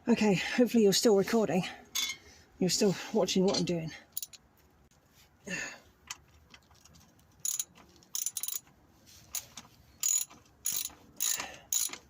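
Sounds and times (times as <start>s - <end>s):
ratchet wrench clicking: 7.4s - 8.7s, 9.3s - 12.0s.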